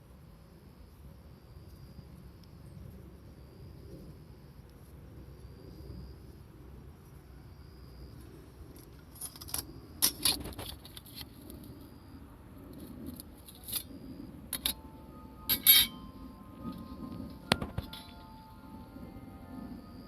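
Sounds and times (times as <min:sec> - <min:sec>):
light metallic clinks and rattles: 0:15.4 - 0:18.4.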